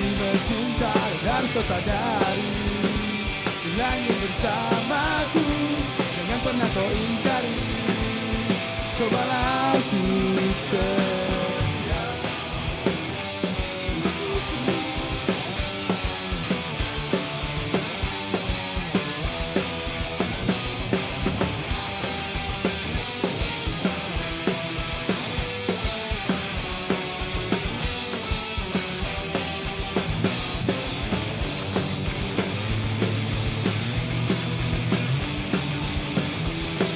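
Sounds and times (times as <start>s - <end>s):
drum kit hitting steadily: 0.0s - 36.9s
rock band playing instrumental: 0.0s - 36.9s.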